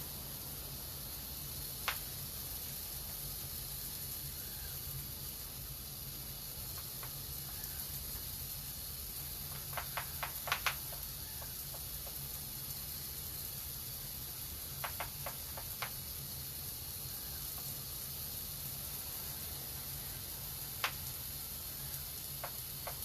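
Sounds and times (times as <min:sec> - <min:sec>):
water mist spraying hiss: 0:00.0 - 0:23.0
sharp clicks: 0:09.6 - 0:11.0, 0:20.8 - 0:21.0.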